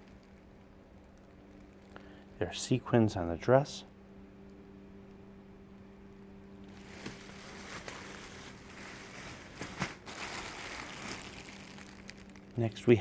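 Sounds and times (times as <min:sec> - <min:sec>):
steady low hum: 0:00.0 - 0:13.0
dresses and wrappings rustling: 0:06.6 - 0:12.6.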